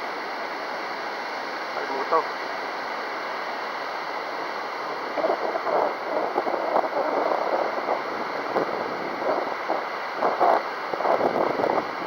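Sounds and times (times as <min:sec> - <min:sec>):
gusty wind buffeting microphone: 0:05.0 - 0:12.0.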